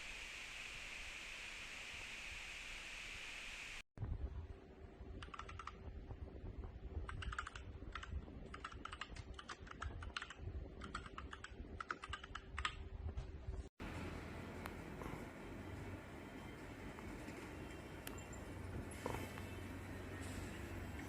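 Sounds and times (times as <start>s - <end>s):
mechanical keyboard typing: 5.2s - 5.8s, 7.0s - 12.8s.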